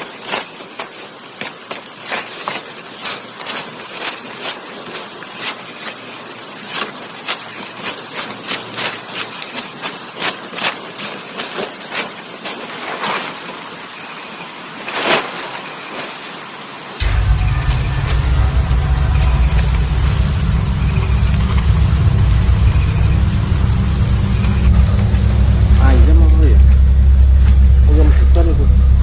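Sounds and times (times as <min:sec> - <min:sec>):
sharp cracks and crunches: 0:00.0 - 0:13.5
high insect drone: 0:17.0 - 0:29.0
loud low hum: 0:17.0 - 0:29.0.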